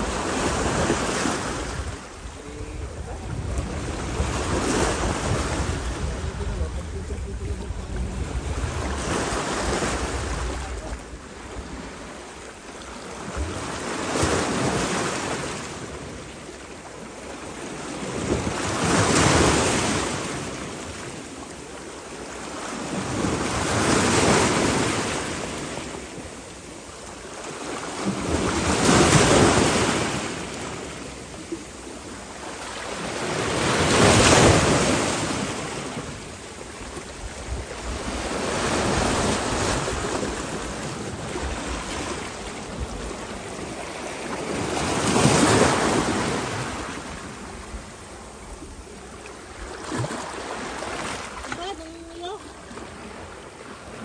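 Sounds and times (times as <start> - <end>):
wind on microphone: 0.0 - 12.5, 17.7 - 21.4, 27.9 - 54.0
waves breaking: 0.0 - 54.0.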